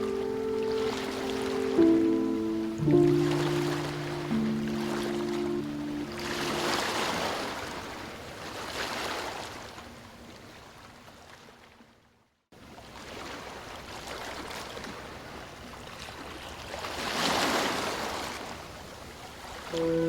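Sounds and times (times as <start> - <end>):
ocean waves washing onto beach: 0.0 - 9.8.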